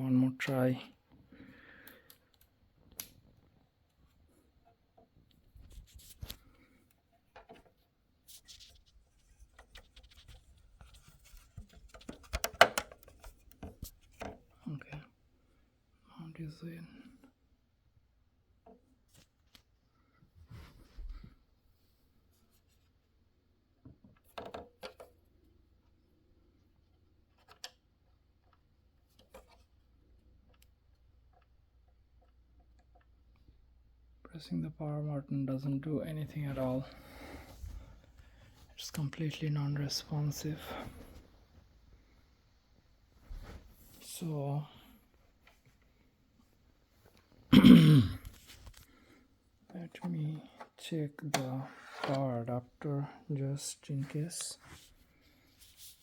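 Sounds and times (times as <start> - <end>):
projector mount clicks and knocks: 11.9 - 14.4.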